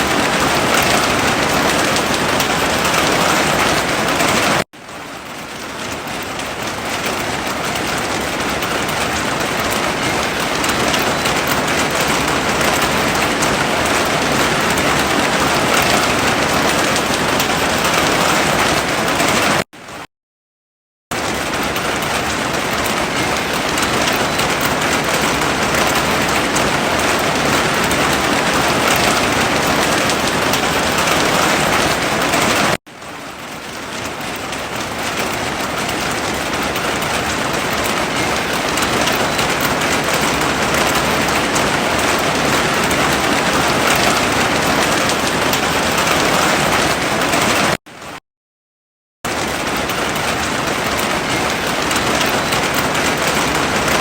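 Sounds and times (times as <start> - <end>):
heavy rain falling: 0.0 - 20.0, 21.1 - 48.2, 49.3 - 54.0.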